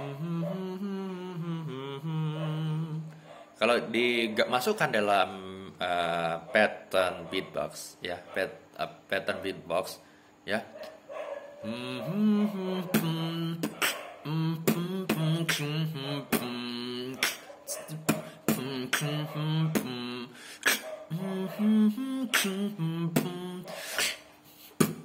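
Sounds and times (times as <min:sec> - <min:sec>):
person humming a melody: 0:00.0 - 0:03.2, 0:05.3 - 0:06.2, 0:11.6 - 0:25.0
beatboxing mouth percussion: 0:11.7 - 0:25.0.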